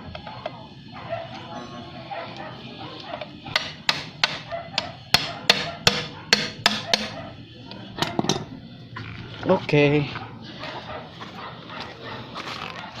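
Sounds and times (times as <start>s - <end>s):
hammer striking metal: 3.5s - 7.2s.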